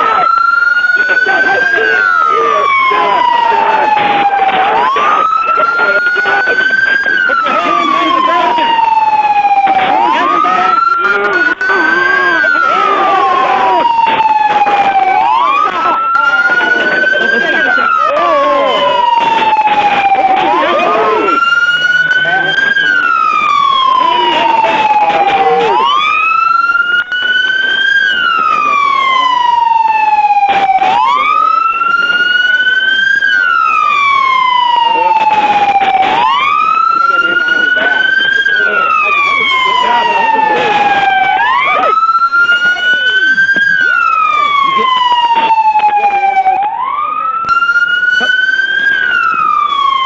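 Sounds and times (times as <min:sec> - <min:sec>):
police siren wailing: 0:00.0 - 0:50.0.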